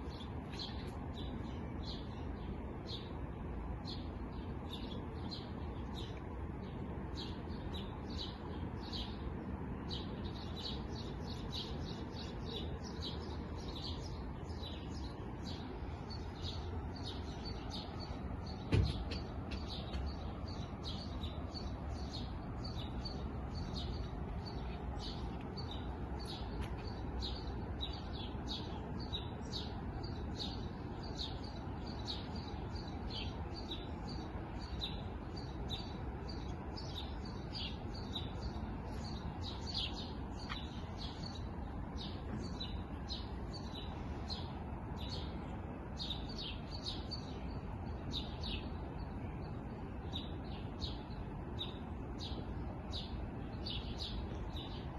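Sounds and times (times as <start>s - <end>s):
small birds chirping: 0.0s - 54.9s
thump: 18.6s - 20.0s.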